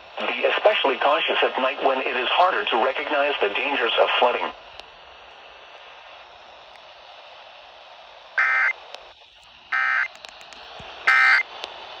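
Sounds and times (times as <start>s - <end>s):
broadcast hiss: 0.0s - 12.0s
digital tone bursts: 8.4s - 8.7s, 9.8s - 10.1s, 11.1s - 11.4s.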